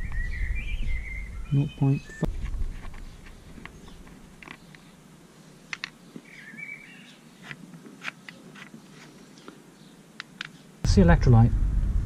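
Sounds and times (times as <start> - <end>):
bird chirping: 0.0 - 10.9.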